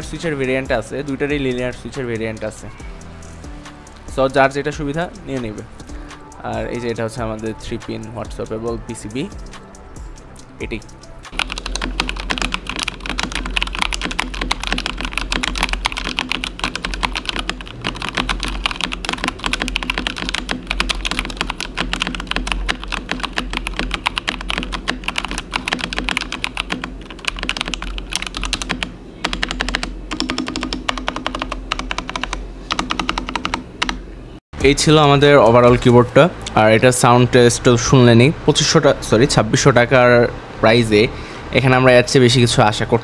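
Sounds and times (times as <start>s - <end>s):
steady low hum: 0.0s - 43.0s
mechanical keyboard typing: 11.3s - 34.0s.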